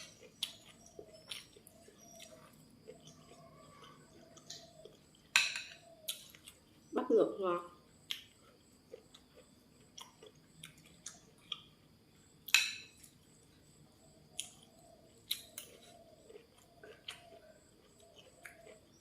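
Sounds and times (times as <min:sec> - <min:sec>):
chewing clicks: 0:00.0 - 0:06.6, 0:08.0 - 0:11.7, 0:14.3 - 0:19.0.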